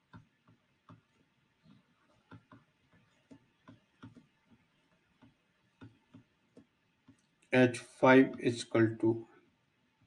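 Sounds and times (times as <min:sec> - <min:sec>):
faint irregular clicks and taps: 0:00.0 - 0:07.6.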